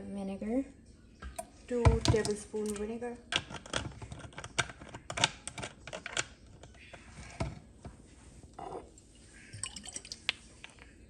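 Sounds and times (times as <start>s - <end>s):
kitchen utensils clicking and tapping: 1.9s - 6.7s.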